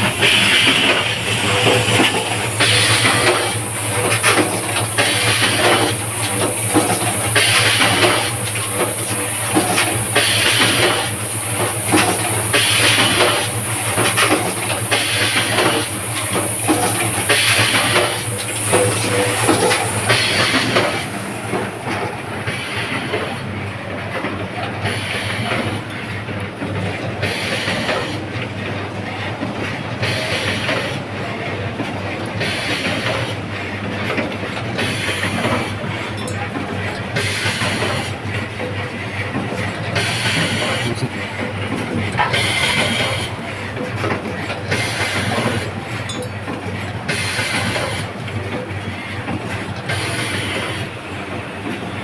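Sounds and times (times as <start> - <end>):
high hiss: 0.0 - 21.3
pneumatic hiss bursts: 0.0 - 21.6
mechanical clacking: 34.7 - 48.0.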